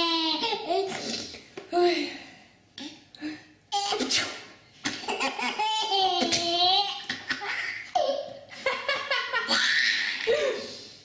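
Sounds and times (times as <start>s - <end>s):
baby laughing: 4.9s - 10.4s.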